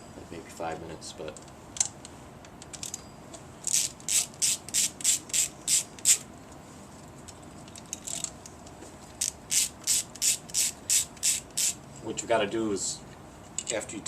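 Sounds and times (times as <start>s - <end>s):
ratchet wrench clicking: 3.7s - 6.2s, 9.2s - 11.8s.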